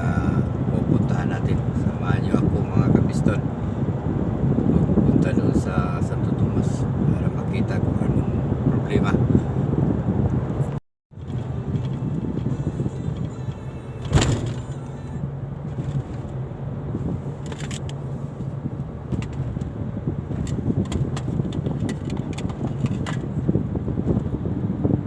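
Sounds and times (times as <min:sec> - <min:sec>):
road noise: 0:00.0 - 0:25.0
vehicle engine droning: 0:11.1 - 0:25.0
clicks and rattles: 0:11.2 - 0:13.4, 0:17.4 - 0:18.1, 0:20.3 - 0:23.4.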